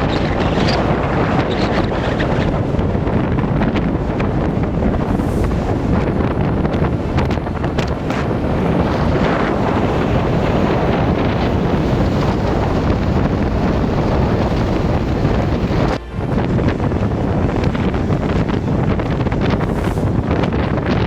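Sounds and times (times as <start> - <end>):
breaking surf: 0.0 - 16.0
wind buffeting microphone: 0.0 - 21.0.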